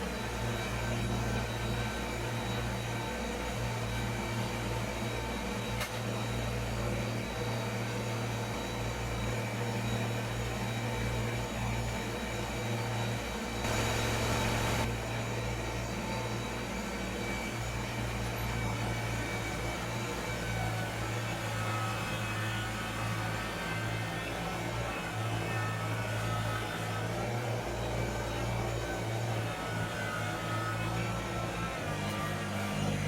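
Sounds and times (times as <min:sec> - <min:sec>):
tractor diesel engine running: 0:13.6 - 0:14.9.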